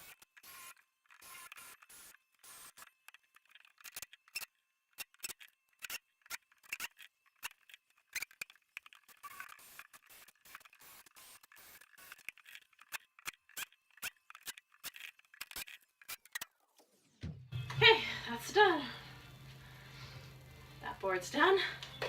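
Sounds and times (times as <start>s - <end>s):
sharp clicks and scrapes: 0.0s - 16.9s.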